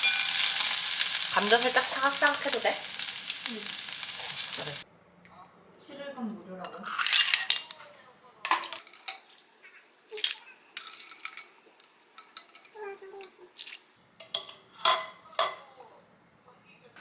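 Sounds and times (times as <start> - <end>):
cutlery clinking against dishes: 0.0 - 0.8, 6.8 - 7.8, 8.5 - 9.4, 10.2 - 11.6, 12.2 - 12.8, 14.2 - 15.6.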